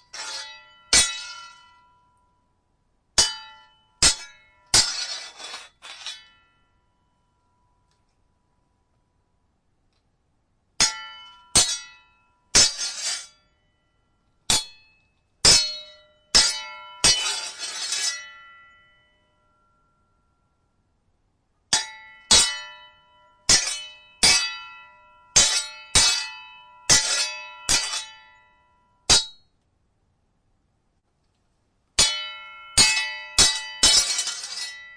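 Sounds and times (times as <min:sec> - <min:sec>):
blade scraping along blade: 0:00.0 - 0:01.7, 0:04.1 - 0:06.4, 0:12.6 - 0:13.3, 0:16.4 - 0:18.3, 0:33.4 - 0:34.9
sword blades clashing: 0:00.0 - 0:01.8, 0:03.2 - 0:06.5, 0:10.8 - 0:12.0, 0:12.6 - 0:13.4, 0:14.5 - 0:18.7, 0:21.8 - 0:28.3, 0:29.1 - 0:29.4, 0:32.0 - 0:34.9.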